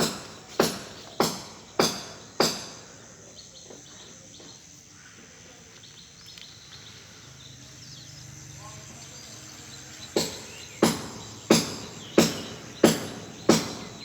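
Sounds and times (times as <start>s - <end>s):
outdoor background: 0.0s - 14.0s
high bird chirps: 5.8s - 14.0s.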